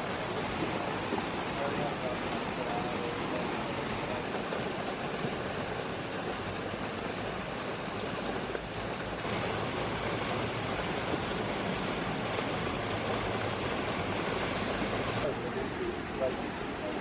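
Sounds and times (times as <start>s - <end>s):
steady rushing noise: 0.0s - 17.0s.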